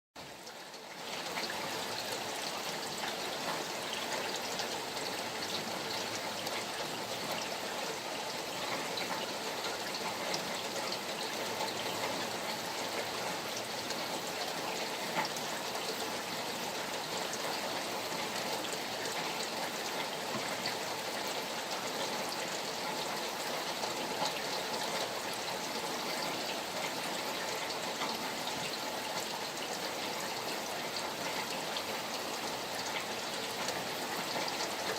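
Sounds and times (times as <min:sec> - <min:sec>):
rain drops pattering: 0:00.2 - 0:34.9
running water: 0:00.2 - 0:34.9.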